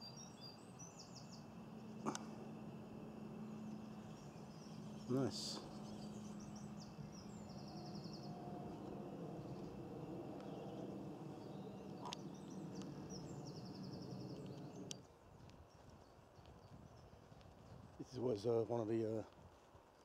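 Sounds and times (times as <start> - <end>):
low droning hum: 0.0 - 15.0
songbird trilling: 0.0 - 15.0
faint clicks: 1.9 - 2.5, 8.3 - 15.6.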